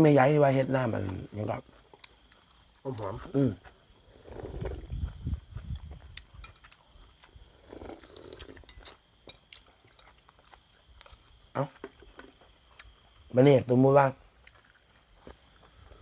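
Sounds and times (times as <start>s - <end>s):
wind buffeting microphone: 4.2s - 6.6s
person eating: 5.8s - 13.2s.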